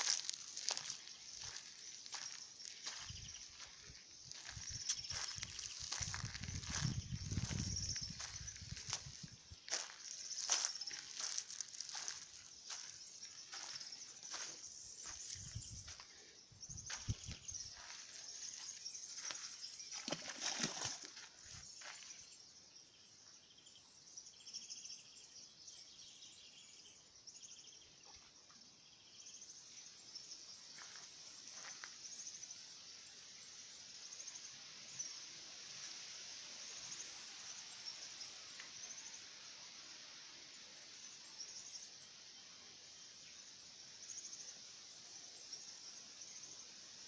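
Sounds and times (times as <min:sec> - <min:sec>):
high-pitched insect trilling: 0:00.0 - 0:19.4
lower insect trill: 0:00.0 - 0:47.0.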